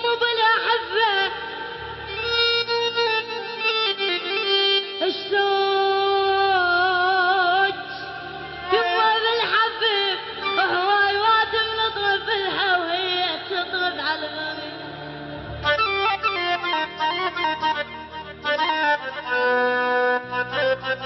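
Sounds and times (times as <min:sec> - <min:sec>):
man singing with vibrato: 0:00.0 - 0:15.0.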